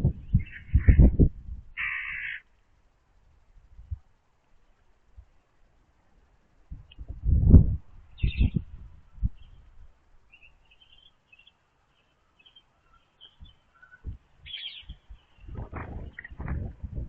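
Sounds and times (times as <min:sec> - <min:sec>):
small birds chirping: 0:00.1 - 0:01.1, 0:08.0 - 0:16.5
low dull thumps and knocks: 0:15.5 - 0:17.0.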